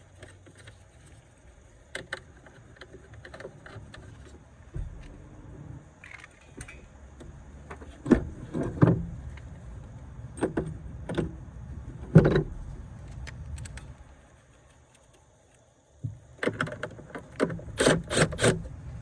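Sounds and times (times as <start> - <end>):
sharp knocks and clunks: 4.7 - 5.4, 6.5 - 9.2, 12.0 - 12.6
low rumble: 10.8 - 14.3.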